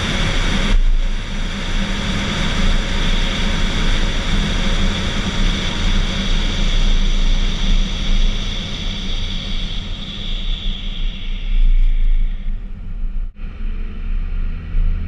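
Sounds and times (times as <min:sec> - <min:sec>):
vehicle running noise: 0:12.6 - 0:15.0.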